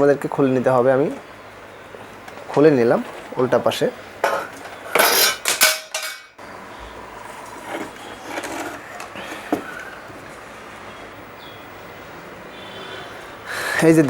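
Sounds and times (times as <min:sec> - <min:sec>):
metal tools clinking on workbench: 0:04.2 - 0:06.4.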